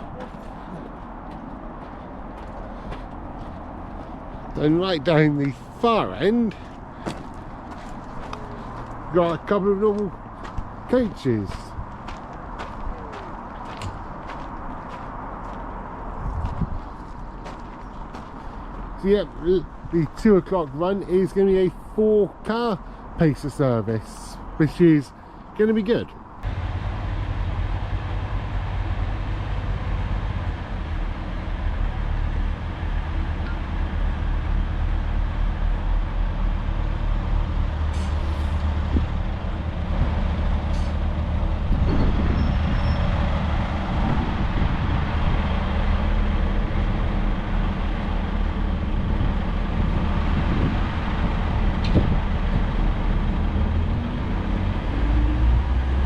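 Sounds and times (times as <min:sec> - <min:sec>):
diesel engine idling: 0:26.4 - 0:56.0.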